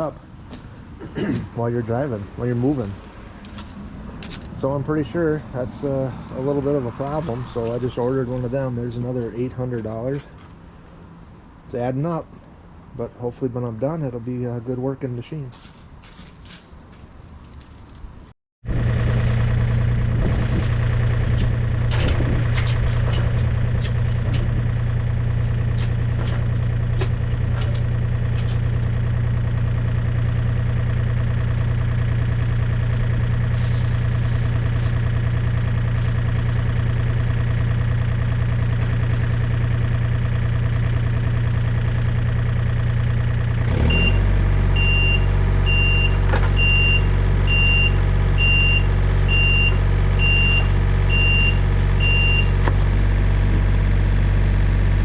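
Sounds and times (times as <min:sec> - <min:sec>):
diesel engine running: 0:00.0 - 0:15.0, 0:18.6 - 0:55.0
high alarm beeping: 0:44.8 - 0:52.5.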